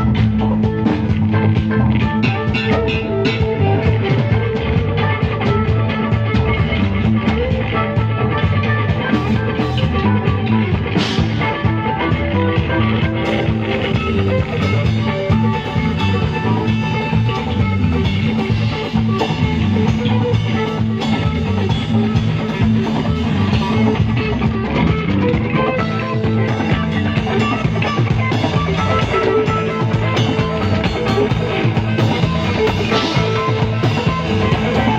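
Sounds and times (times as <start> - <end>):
bass guitar: 0.0 - 34.9
drum kit: 0.0 - 34.9
electric guitar: 0.0 - 34.9.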